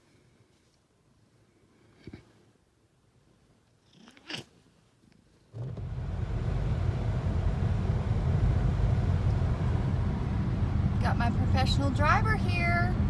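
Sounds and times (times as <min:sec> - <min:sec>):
car cabin driving rumble: 0:05.5 - 0:13.0.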